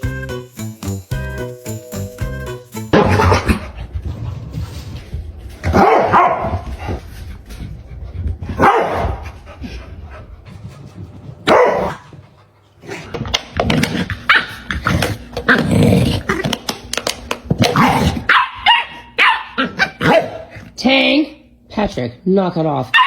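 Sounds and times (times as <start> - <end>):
dog barking: 5.7 - 6.6, 8.6 - 9.2, 11.5 - 12.0, 18.3 - 20.5.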